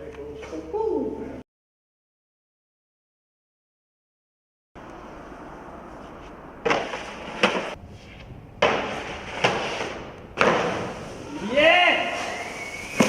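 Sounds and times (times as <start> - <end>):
sharp knocks with scraping rush: 6.6 - 7.8, 8.6 - 11.0
steady hiss: 8.8 - 13.0.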